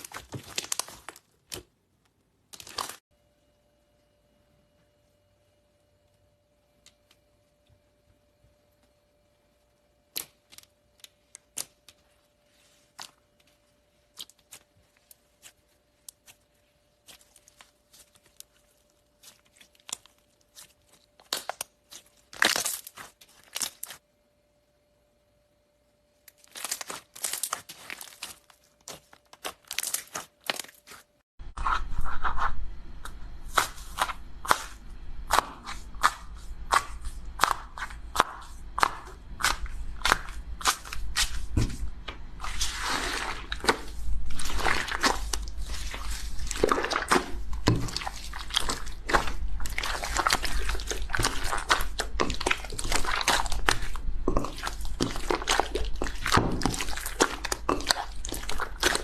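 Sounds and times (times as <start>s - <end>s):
low steady hum: 0.0s - 59.0s
slime squished by hand: 10.1s - 24.0s, 26.3s - 31.1s, 42.4s - 59.0s.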